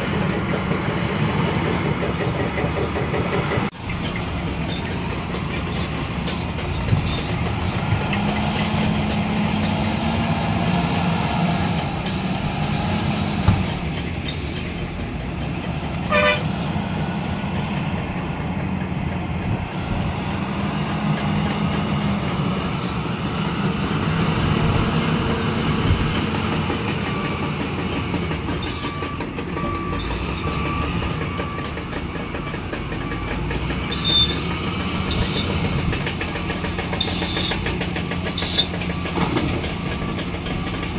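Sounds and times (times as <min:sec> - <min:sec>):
diesel machinery engine: 0:00.0 - 0:40.9
metallic clanks and knocks: 0:35.5 - 0:40.9.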